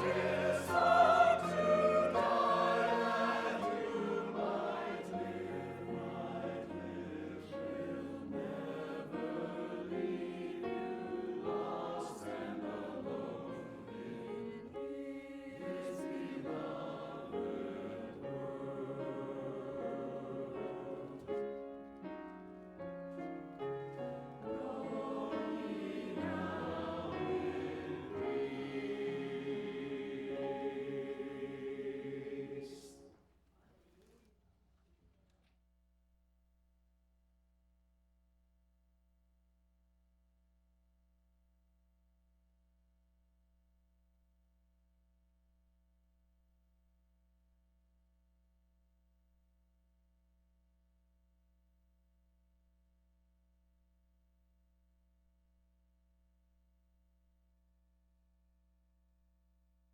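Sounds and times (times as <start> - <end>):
choral singing: 0.0 - 21.8, 23.9 - 33.2.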